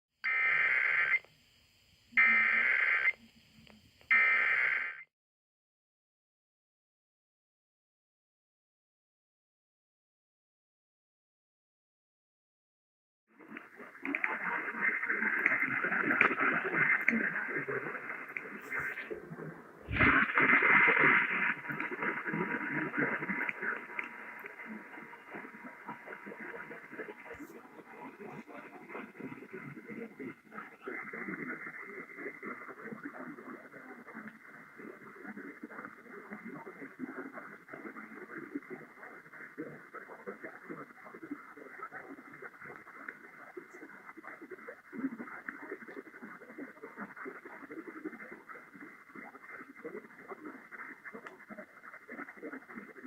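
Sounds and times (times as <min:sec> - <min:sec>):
faint muffled radio program: 0:00.2 - 0:05.1, 0:13.3 - 0:53.0
radio static hiss: 0:00.3 - 0:05.1, 0:13.4 - 0:53.0
screeching digital data tones: 0:04.1 - 0:05.0.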